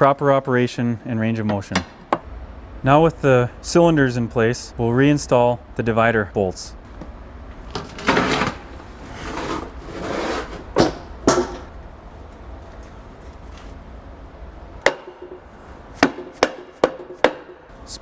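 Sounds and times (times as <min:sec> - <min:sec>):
metal on metal clicks: 0:01.4 - 0:02.2
metal parts scraping and rustling: 0:07.6 - 0:10.8.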